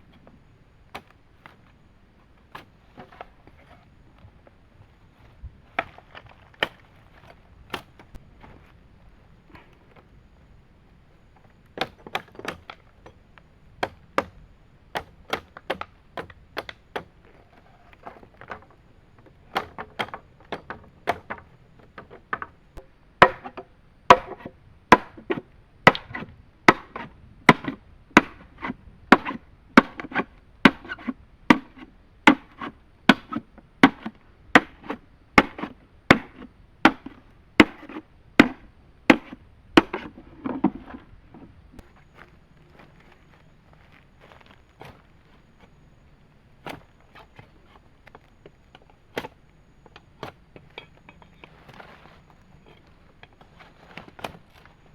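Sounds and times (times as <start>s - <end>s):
blade chopping wood: 11.8s - 12.8s, 13.8s - 17.1s, 19.5s - 22.5s, 23.2s - 41.1s, 53.9s - 54.7s.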